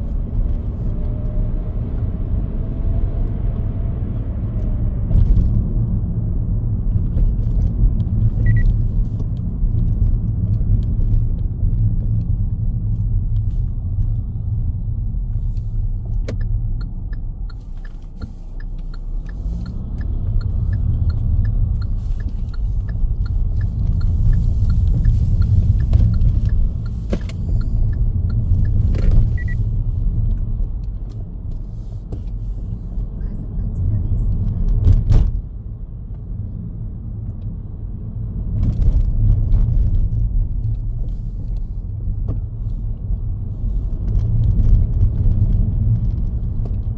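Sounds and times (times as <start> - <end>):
car engine and tyres rumbling: 0.0 - 46.9
turn signal ticking: 7.8 - 10.9, 15.2 - 34.8
short electronic beep: 8.4 - 8.7, 29.3 - 29.6.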